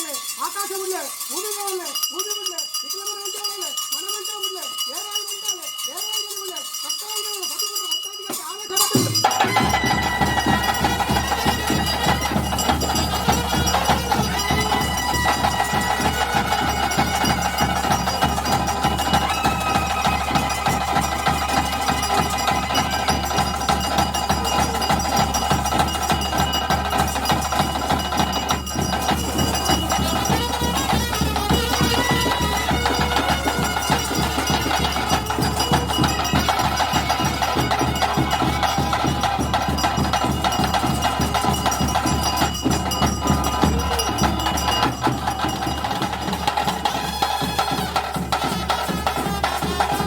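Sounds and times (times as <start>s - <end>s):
fast dense drumming: 8.9s - 50.0s.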